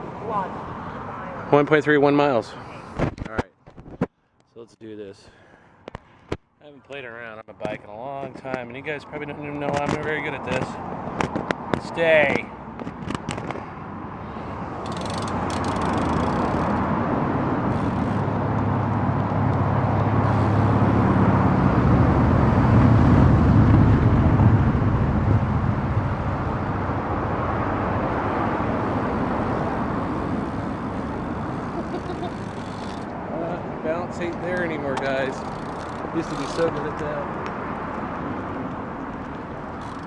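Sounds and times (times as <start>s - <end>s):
vehicle passing slowly: 13.8s - 40.0s.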